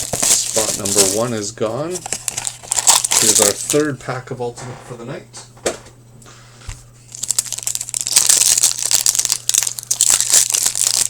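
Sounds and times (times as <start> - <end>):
wrapper crinkling and tearing: 0.0 - 1.4, 2.0 - 3.9, 7.1 - 11.0.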